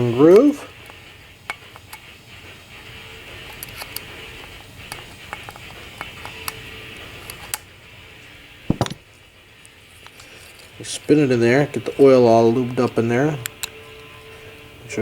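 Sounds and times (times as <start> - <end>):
heavy thump: 8.7 - 9.0.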